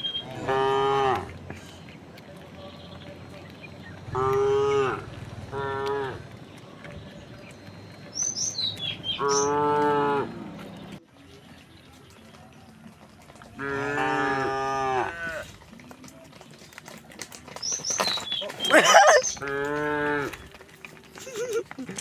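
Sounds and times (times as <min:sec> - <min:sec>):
cattle mooing: 0:00.0 - 0:01.4, 0:04.0 - 0:06.3, 0:09.1 - 0:10.8, 0:13.6 - 0:15.5, 0:18.6 - 0:20.4
high bird chirps: 0:07.6 - 0:09.6.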